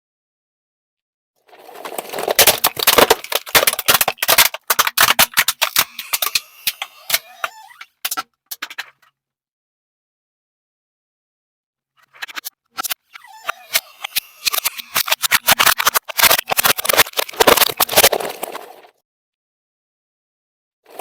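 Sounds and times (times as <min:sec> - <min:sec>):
brittle object crushed under tyre: 0:01.7 - 0:05.8.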